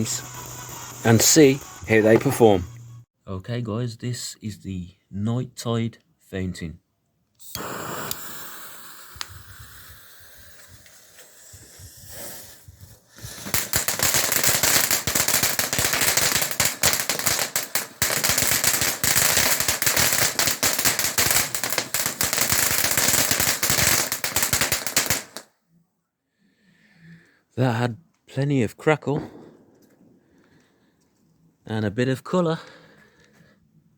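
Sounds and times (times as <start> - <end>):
fountain firework hissing and crackling: 0.0 - 2.8, 7.5 - 25.4.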